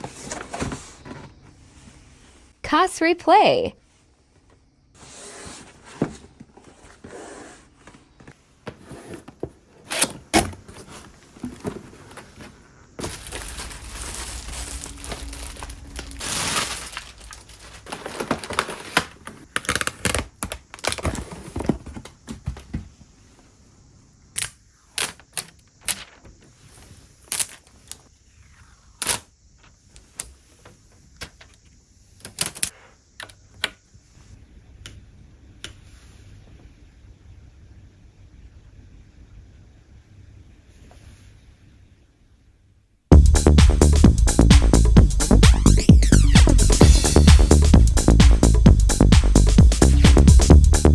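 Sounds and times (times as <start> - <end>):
cardboard packaging rustling: 5.0 - 22.9.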